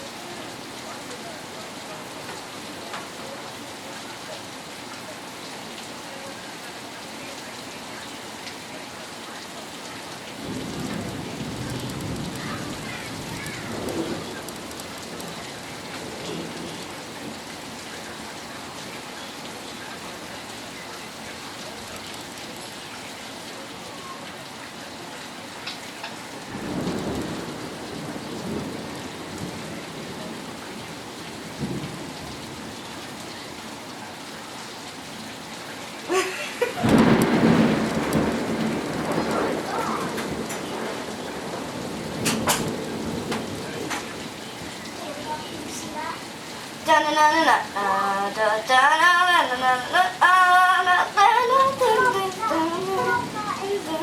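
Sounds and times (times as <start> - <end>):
heavy rain: 0.0 - 54.0
thunder rumbling: 10.4 - 17.8, 26.4 - 33.2, 36.6 - 45.9, 49.4 - 54.0.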